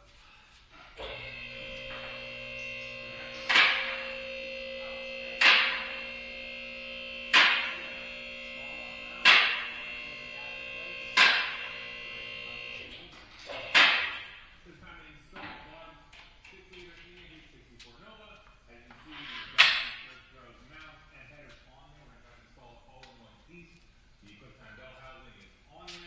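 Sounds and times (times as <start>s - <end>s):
steady hum: 0.8s - 14.3s.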